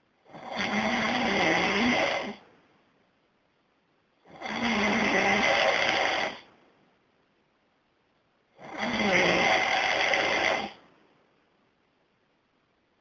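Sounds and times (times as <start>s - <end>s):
man snoring loudly: 0.3s - 2.4s, 4.3s - 6.5s, 8.6s - 10.8s.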